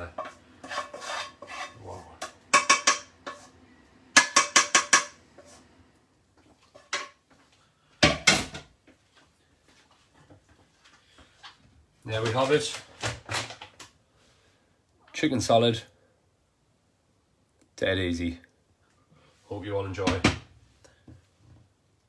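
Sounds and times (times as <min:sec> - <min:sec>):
metal utensils clinking cookware: 0:00.0 - 0:03.5, 0:04.2 - 0:05.2.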